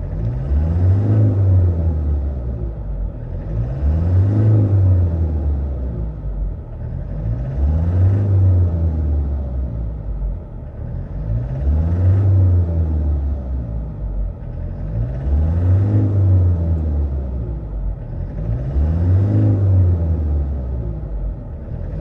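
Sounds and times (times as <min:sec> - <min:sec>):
diesel engine running rough: 0:00.0 - 0:22.0.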